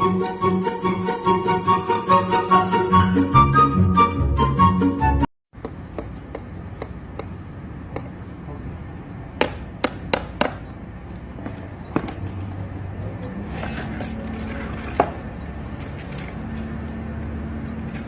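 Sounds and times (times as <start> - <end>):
sharp taps and knocks: 9.4 - 10.7.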